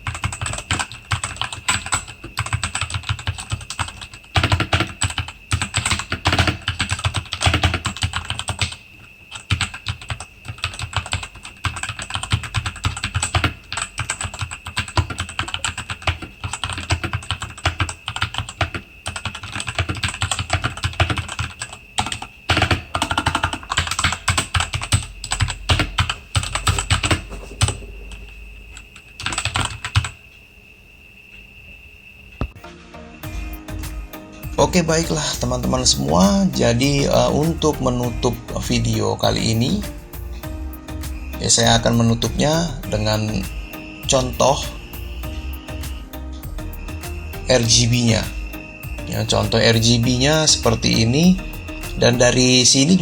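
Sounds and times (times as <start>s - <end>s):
mechanical keyboard typing: 0.0s - 28.2s, 29.2s - 30.2s.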